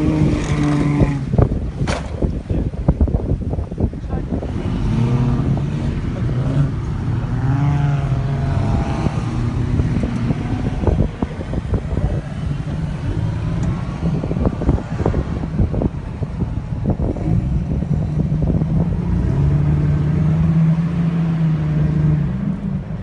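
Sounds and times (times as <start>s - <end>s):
vehicle engine revving: 0.0s - 1.7s, 4.0s - 23.0s
knocks and bumps: 1.8s - 2.4s.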